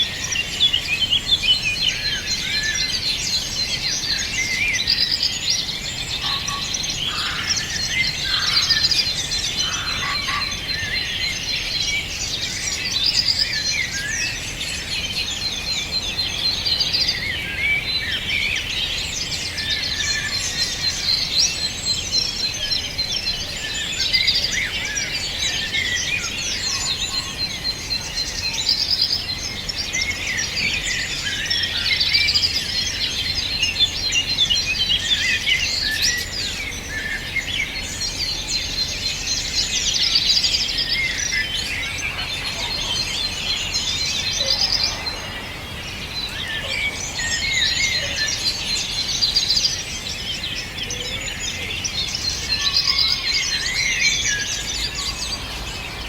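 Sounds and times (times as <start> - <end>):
songbirds chorus: 0.0 - 56.0.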